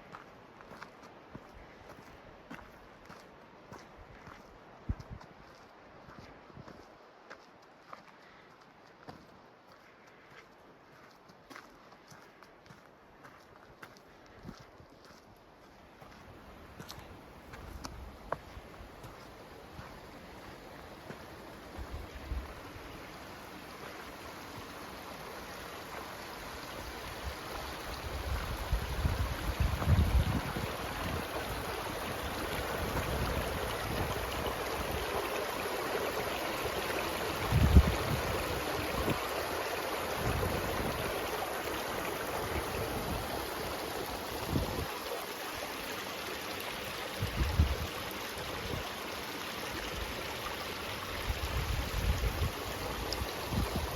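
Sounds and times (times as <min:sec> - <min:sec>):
rushing mountain stream: 0:00.0 - 0:53.9
wind gusting on microphone: 0:28.0 - 0:35.1, 0:37.3 - 0:39.2, 0:40.2 - 0:41.2, 0:44.3 - 0:44.9, 0:47.2 - 0:47.9, 0:51.2 - 0:53.9.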